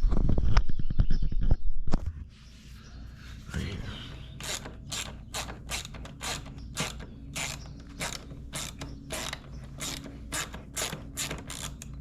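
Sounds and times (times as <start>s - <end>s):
hand ratchet clicking: 4.4s - 12.0s.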